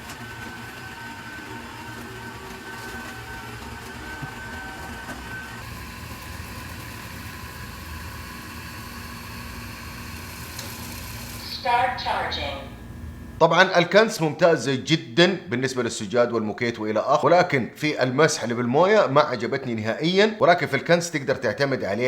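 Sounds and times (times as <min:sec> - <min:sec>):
robot vacuum motor hum: 0:00.0 - 0:12.5.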